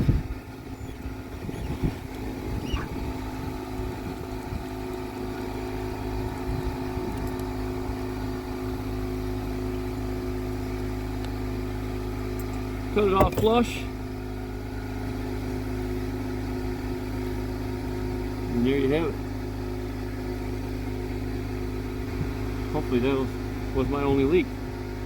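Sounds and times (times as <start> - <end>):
motor humming: 0.0 - 13.8.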